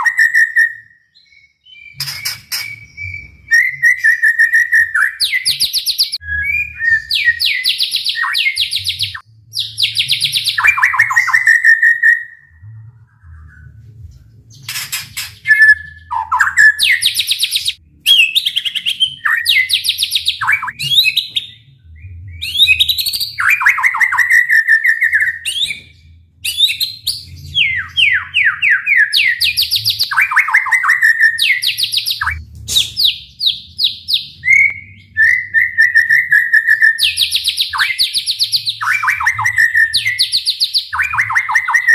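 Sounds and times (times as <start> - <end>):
songbird singing trills and whistles: 0.0 - 41.9.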